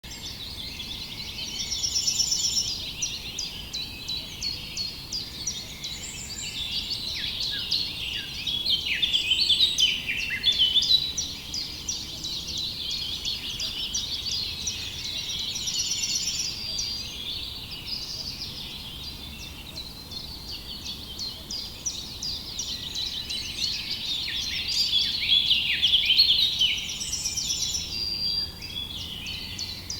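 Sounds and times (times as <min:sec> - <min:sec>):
songbirds chirping: 0:00.0 - 0:29.9.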